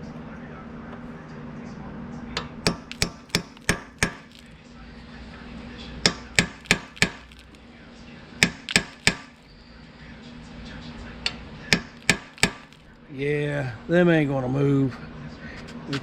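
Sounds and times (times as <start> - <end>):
hammer striking metal: 2.4 - 4.4, 6.0 - 7.5, 8.4 - 9.4, 11.7 - 12.8.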